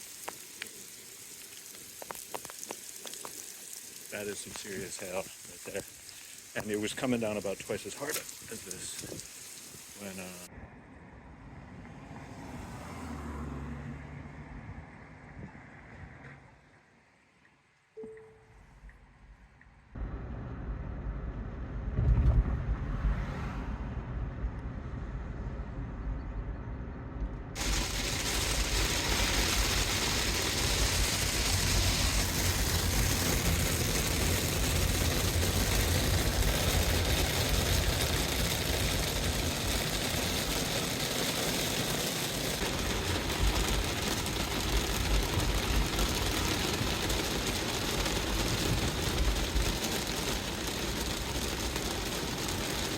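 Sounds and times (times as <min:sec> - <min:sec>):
hail and rain falling hard: 0:00.0 - 0:10.5, 0:27.6 - 0:52.9
low rumble: 0:20.0 - 0:40.8.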